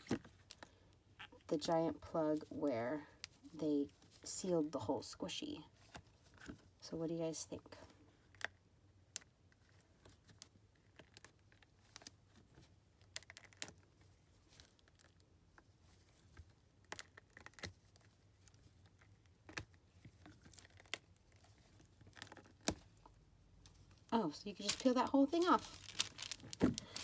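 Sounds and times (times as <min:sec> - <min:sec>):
squishy toy skin crackling: 0:08.2 - 0:27.0
wax paper crinkling: 0:23.7 - 0:27.0.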